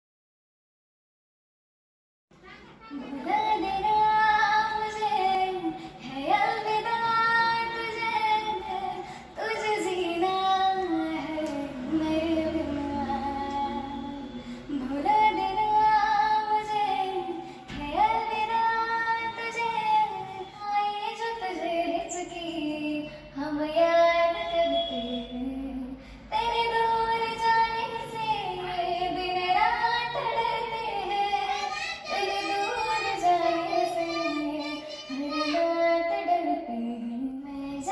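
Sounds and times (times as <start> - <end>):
child singing: 2.4 - 24.5, 26.4 - 37.9.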